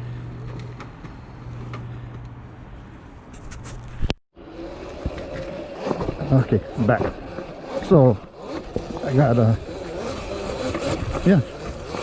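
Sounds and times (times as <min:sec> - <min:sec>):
electric motor and chain humming: 0:04.4 - 0:12.0.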